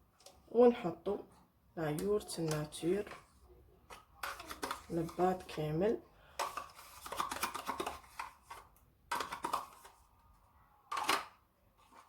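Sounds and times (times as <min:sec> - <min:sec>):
spoon scraping a bowl: 0:04.0 - 0:05.6.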